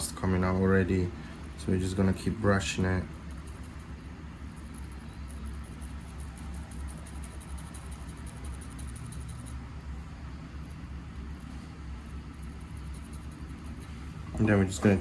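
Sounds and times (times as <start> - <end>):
steady low hum: 0.0 - 15.0
toothbrush scratching phone grille: 1.3 - 9.6, 10.6 - 14.2.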